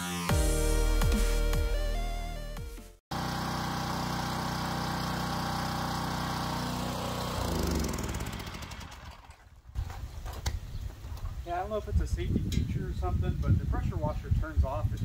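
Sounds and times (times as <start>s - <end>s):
pressure washer engine running: 3.1s - 9.4s.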